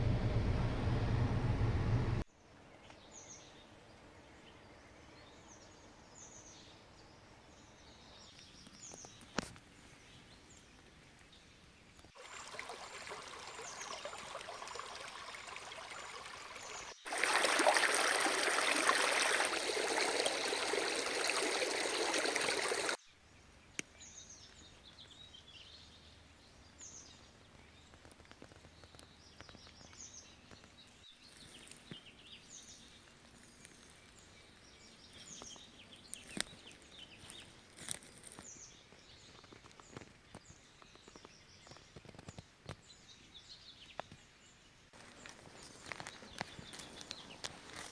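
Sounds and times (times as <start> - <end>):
rushing noise: 0.0 - 2.2
small birds chirping: 18.5 - 47.9.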